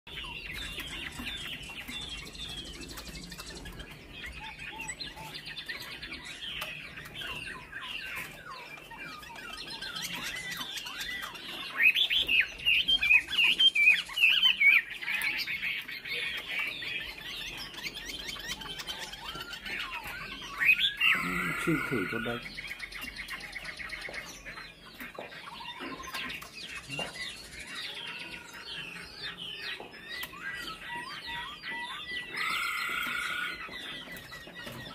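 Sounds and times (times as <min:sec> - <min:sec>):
bird singing chirps and whistles: 0:00.1 - 0:34.9.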